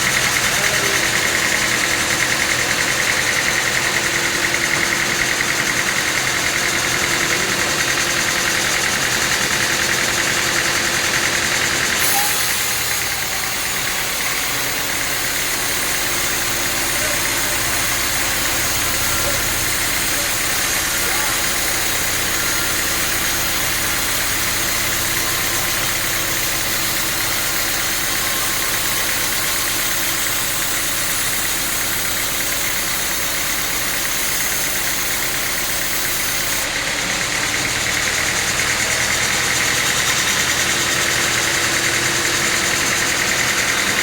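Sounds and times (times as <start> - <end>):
sawmill machinery drone: 0.0 - 44.0.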